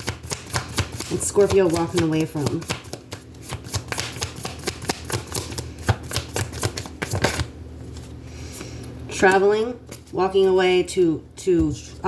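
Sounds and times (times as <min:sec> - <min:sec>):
cards being shuffled: 0:00.0 - 0:08.1.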